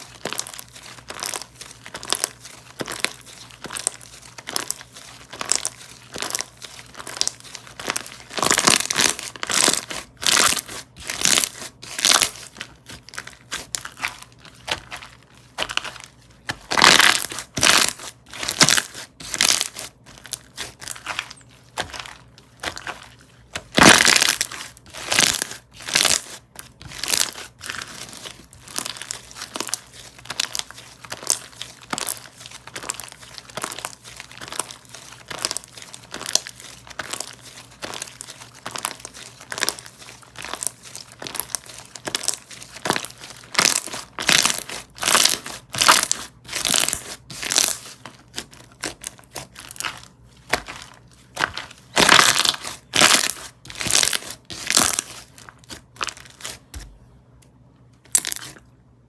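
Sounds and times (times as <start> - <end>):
crunchy slime crackling: 0.0 - 57.0, 58.0 - 58.6.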